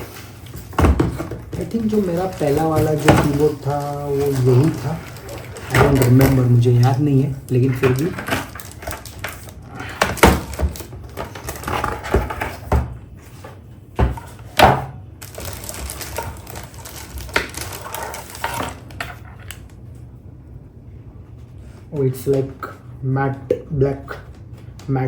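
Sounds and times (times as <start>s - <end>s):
packaging rustling: 0.0s - 12.7s, 15.2s - 19.8s.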